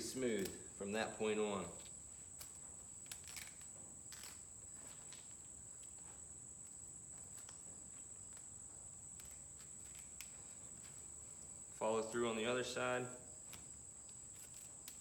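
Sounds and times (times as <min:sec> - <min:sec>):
steel cable clicks: 0:00.0 - 0:00.7, 0:02.3 - 0:04.4, 0:09.1 - 0:10.5
crickets trilling: 0:00.0 - 0:15.0.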